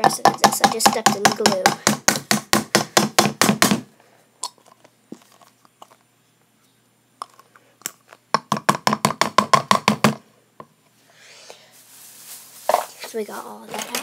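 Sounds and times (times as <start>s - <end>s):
plastic bottle knocking: 0.0s - 3.8s, 8.3s - 10.2s.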